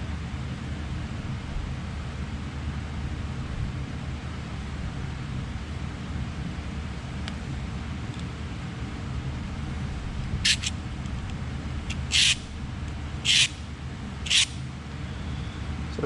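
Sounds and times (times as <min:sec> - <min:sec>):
steady low hum: 0:00.0 - 0:16.0
scratching marks on metal: 0:10.4 - 0:10.7, 0:11.9 - 0:12.5, 0:13.2 - 0:13.6, 0:14.2 - 0:14.6.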